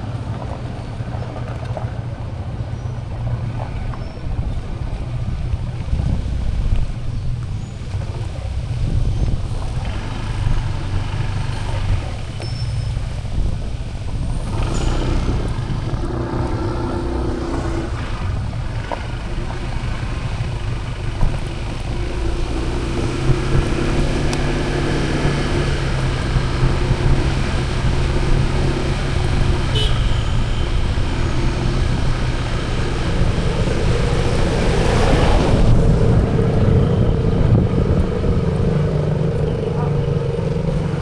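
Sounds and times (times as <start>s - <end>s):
road noise: 0.0s - 41.0s
vehicle engine running: 3.1s - 41.0s.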